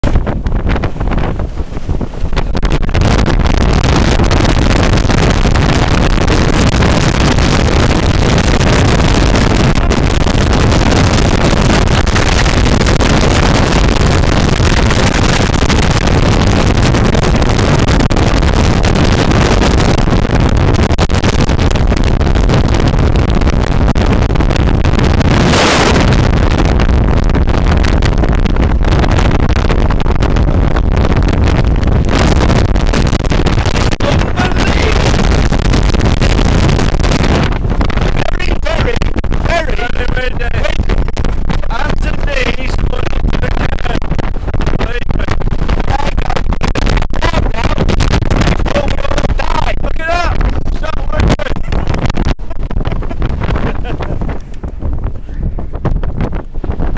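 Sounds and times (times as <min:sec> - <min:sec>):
strong wind on microphone: 0:00.0 - 0:56.9.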